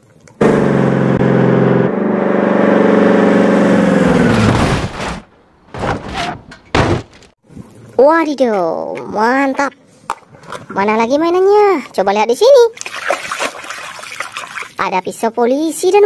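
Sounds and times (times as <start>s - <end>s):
motor running and winding down: 0.4s - 4.7s.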